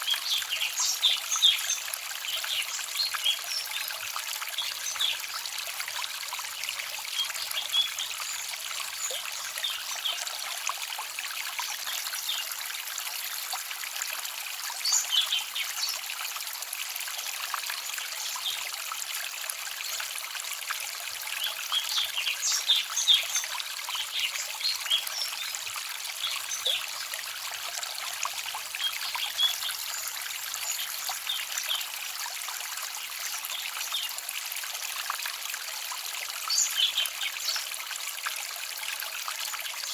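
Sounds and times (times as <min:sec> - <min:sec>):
stream trickling and babbling: 0:00.0 - 0:39.9.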